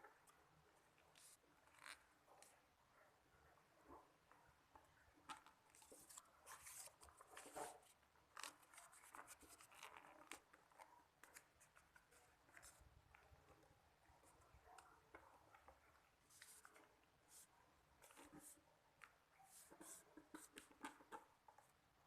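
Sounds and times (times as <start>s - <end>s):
paper rustling and crinkling: 5.3s - 12.8s.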